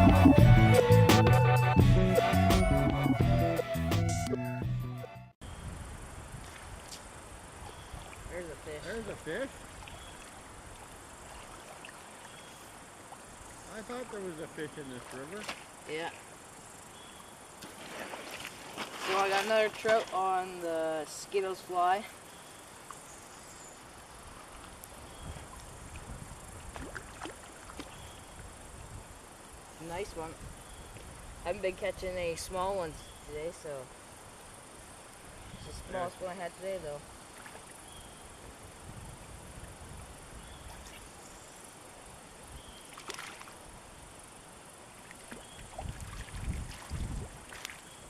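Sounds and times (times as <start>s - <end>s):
brook running: 0.0s - 0.6s, 6.6s - 16.5s, 17.1s - 23.1s, 23.7s - 28.6s, 40.5s - 48.0s
low sloshing thumps: 0.0s - 0.8s
low rumbles: 0.0s - 1.1s
high insect drone: 5.4s - 48.0s
small splashes in water: 9.0s - 13.3s, 14.9s - 16.2s, 17.6s - 20.3s, 24.4s - 28.2s, 37.3s - 37.8s, 40.6s - 41.2s, 42.8s - 43.7s, 44.9s - 48.0s.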